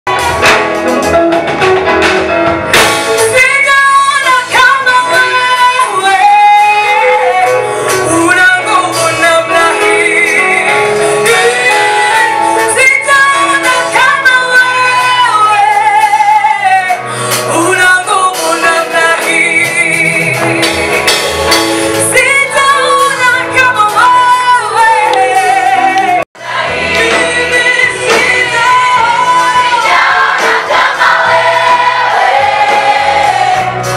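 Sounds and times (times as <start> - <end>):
gospel choir singing: 24.9 - 33.9.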